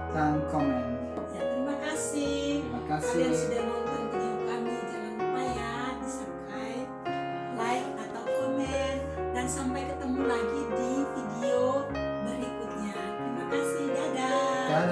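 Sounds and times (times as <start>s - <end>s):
keyboard accompaniment: 0.0s - 14.9s
person singing: 0.2s - 5.8s, 9.8s - 14.9s.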